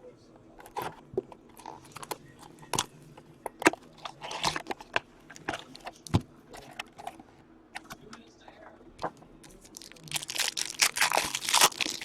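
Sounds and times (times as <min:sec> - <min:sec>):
packaging rustling: 0:09.4 - 0:12.0
card packs clicking and tapping: 0:09.8 - 0:12.0.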